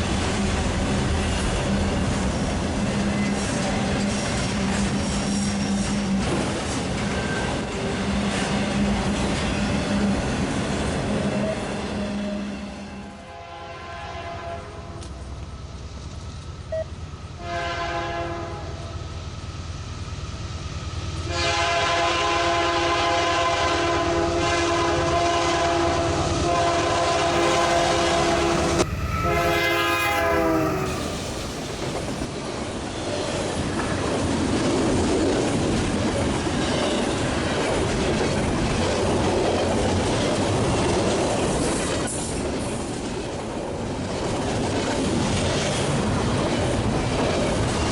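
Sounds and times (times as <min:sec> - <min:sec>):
train cars rumbling and clattering: 0:00.0 - 0:13.4, 0:14.2 - 0:47.9
locomotive air horn: 0:12.1 - 0:15.0, 0:17.4 - 0:18.9, 0:21.3 - 0:32.3.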